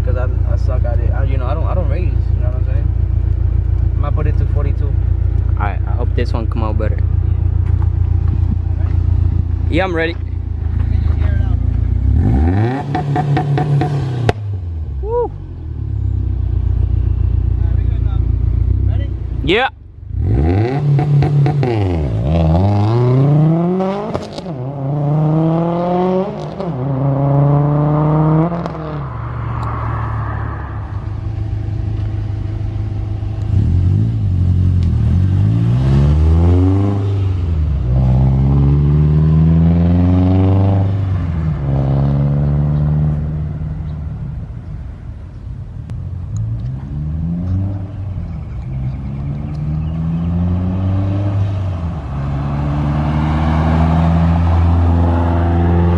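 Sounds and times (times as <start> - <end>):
car engine accelerating through gears: 10.5 - 14.7, 20.1 - 44.2, 46.3 - 55.9.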